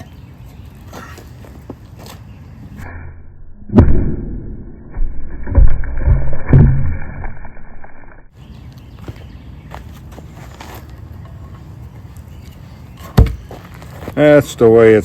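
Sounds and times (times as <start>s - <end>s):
dull thuds of board breaking: 4.9s - 7.4s.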